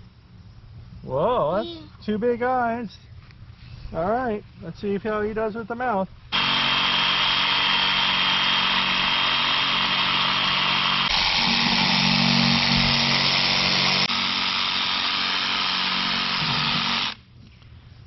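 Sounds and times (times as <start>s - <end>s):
power saw cutting pumpkin: 6.4s - 17.2s.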